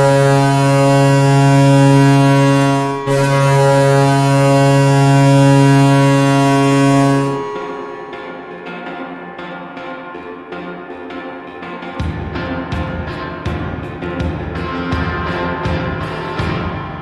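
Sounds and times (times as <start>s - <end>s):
deep loud air horn: 0.0s - 8.8s
music: 0.0s - 17.0s.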